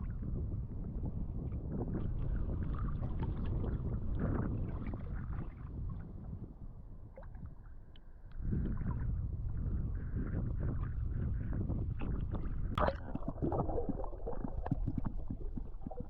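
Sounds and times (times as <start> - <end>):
water sloshing and splashing: 12.0 - 16.0.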